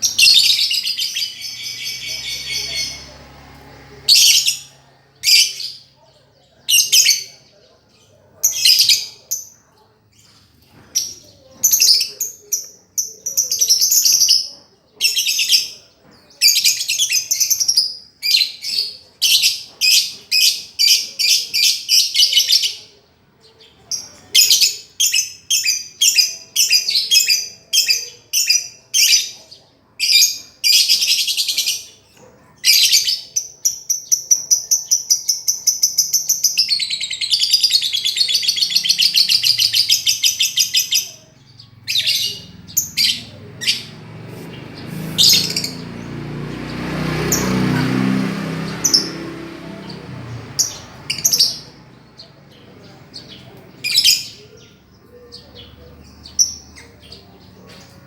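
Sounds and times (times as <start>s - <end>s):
lovebird chattering: 32.6s - 45.9s.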